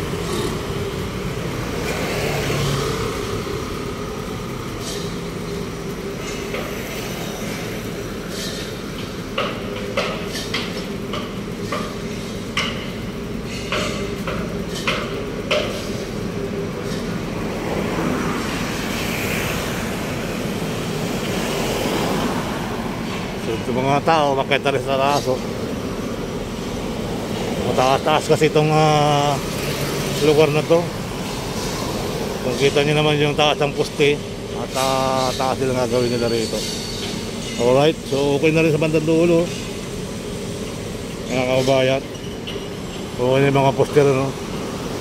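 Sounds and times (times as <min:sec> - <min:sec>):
machinery running: 0:00.0 - 0:45.0
traffic hum: 0:00.0 - 0:45.0.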